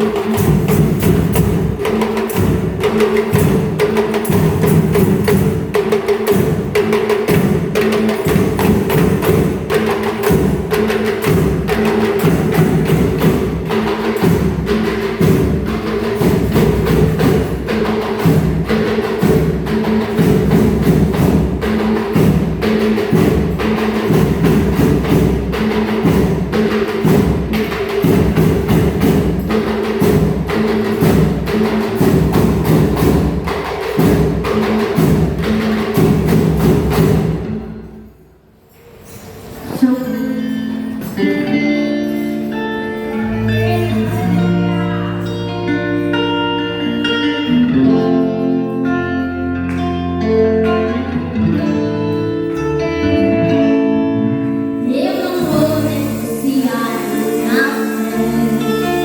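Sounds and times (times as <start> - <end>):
loud steady drumming: 0.0 - 38.1
instrumental church music: 0.0 - 59.0.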